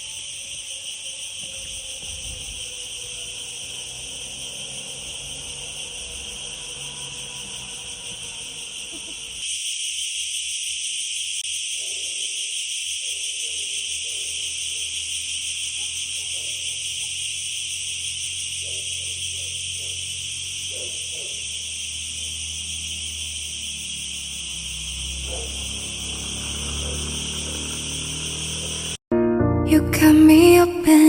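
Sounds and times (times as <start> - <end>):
high-pitched insect chorus: 0.0 - 29.0.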